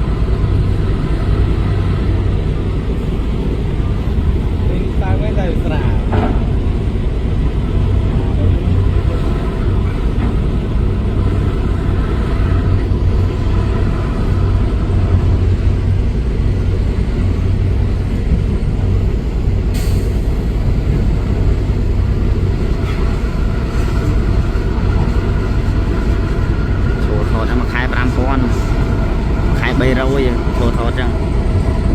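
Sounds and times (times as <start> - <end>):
heavy diesel engine droning: 0.0 - 31.9
brief sharp hiss: 19.7 - 20.3.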